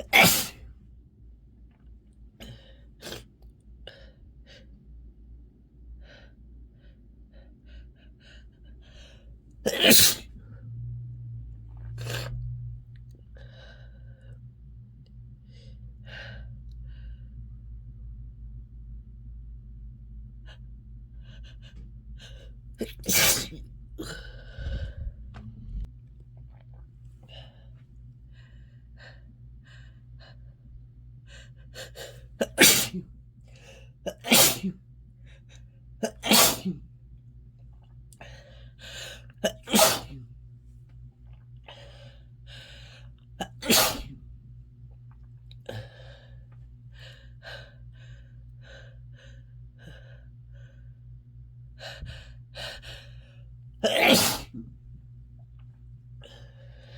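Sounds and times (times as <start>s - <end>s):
person sneezing: 0.0s - 0.6s, 9.7s - 10.3s, 22.8s - 25.0s, 32.4s - 33.0s, 34.1s - 34.8s, 36.0s - 36.8s, 39.4s - 40.2s, 43.4s - 44.2s, 53.8s - 54.6s.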